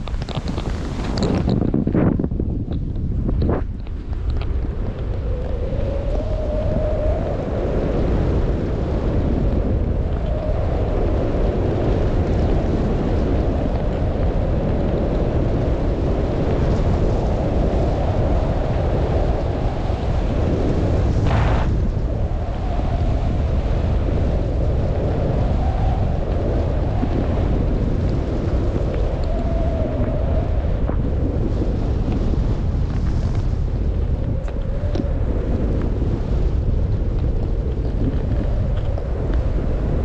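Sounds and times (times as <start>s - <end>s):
skis sliding on snow: 0.0s - 1.8s
wind buffeting microphone: 0.0s - 40.0s.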